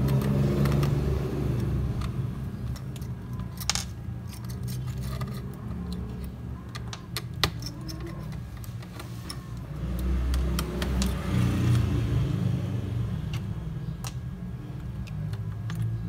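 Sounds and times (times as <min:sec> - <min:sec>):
screwdriver and metal parts clicking: 0:01.6 - 0:11.2.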